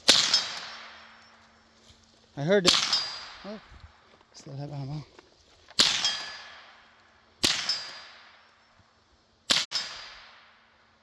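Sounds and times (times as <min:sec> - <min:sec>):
rifle shots with echo: 0:00.0 - 0:01.2, 0:02.6 - 0:03.6, 0:05.8 - 0:08.4, 0:09.5 - 0:10.8.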